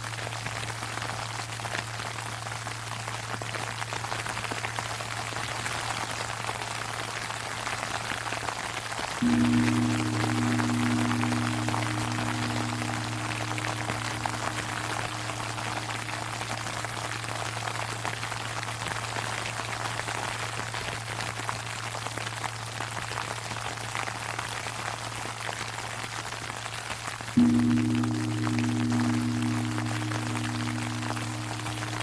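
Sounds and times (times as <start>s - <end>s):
temple bell humming: 9.2s - 18.8s, 27.4s - 32.0s.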